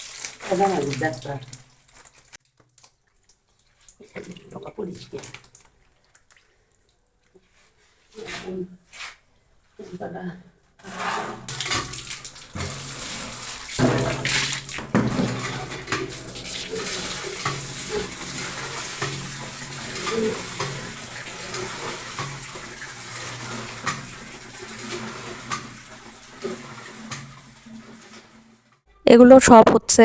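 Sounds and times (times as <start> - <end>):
water splashing in metal pots: 0.0 - 7.5, 11.4 - 28.6
metal pots clinking: 11.5 - 27.4.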